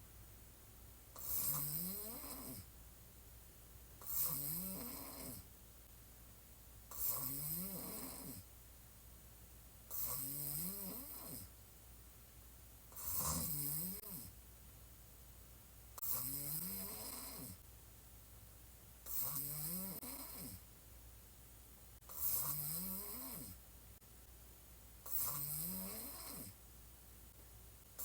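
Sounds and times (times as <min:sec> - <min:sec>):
woman snoring heavily: 0:01.2 - 0:02.7, 0:04.0 - 0:05.5, 0:06.9 - 0:08.5, 0:09.9 - 0:11.5, 0:13.0 - 0:14.3, 0:16.0 - 0:17.6, 0:19.1 - 0:20.6, 0:22.1 - 0:23.6, 0:25.1 - 0:26.6.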